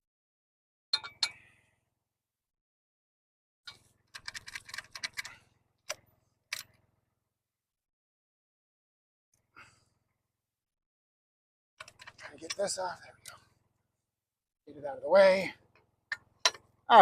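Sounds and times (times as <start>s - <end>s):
rattling clicks: 3.7s - 5.3s.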